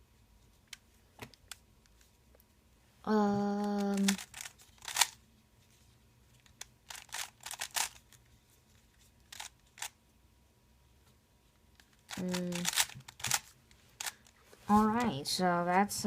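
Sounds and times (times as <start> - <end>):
puzzle cube layers clicking: 3.6 - 5.2, 6.4 - 8.2, 9.3 - 10.0, 11.8 - 14.3.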